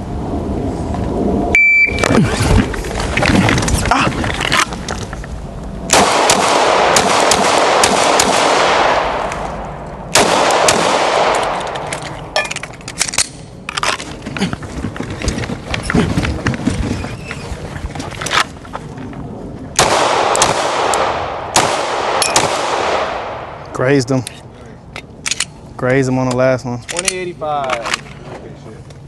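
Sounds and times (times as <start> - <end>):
gunshots: 5.9 - 9.3, 10.1 - 11.8, 19.8 - 23.5.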